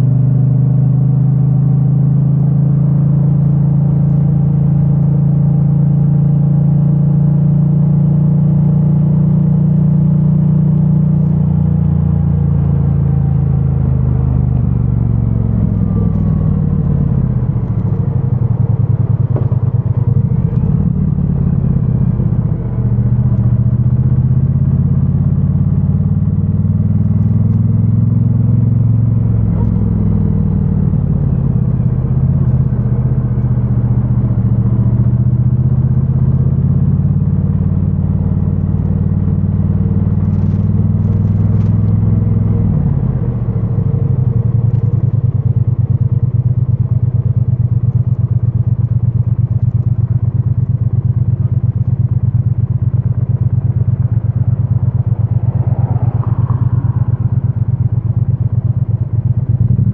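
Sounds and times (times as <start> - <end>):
muffled motorcycle engine revving: 0.0 - 59.9.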